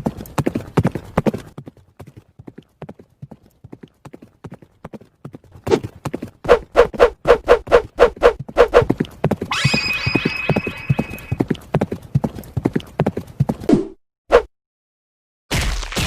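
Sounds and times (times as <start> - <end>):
horse hooves clip-clopping: 0.0 - 13.7
horse whinny: 9.5 - 11.4.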